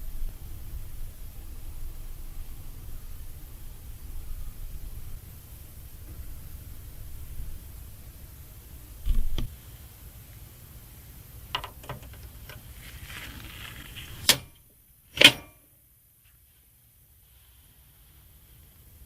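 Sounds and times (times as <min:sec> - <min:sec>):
knocks and light clicks: 0:11.5 - 0:12.6
panels snapping shut: 0:11.6 - 0:12.6, 0:14.0 - 0:15.6.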